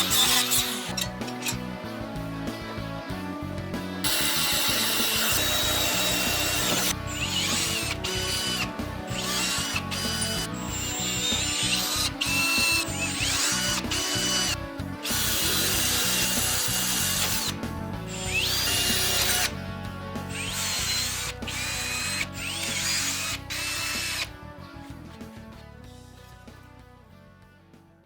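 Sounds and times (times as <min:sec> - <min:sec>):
power drill whining: 0:00.0 - 0:01.8, 0:03.8 - 0:19.6, 0:20.2 - 0:24.4
background music: 0:00.0 - 0:28.0.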